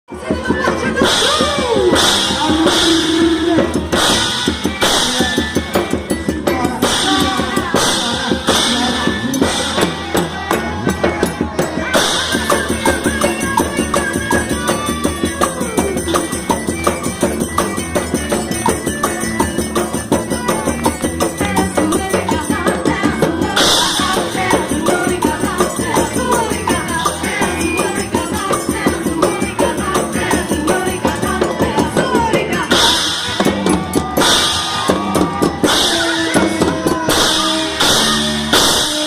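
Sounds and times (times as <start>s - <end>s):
jingling percussion beat: 0.1s - 39.0s
upbeat music: 0.1s - 39.0s.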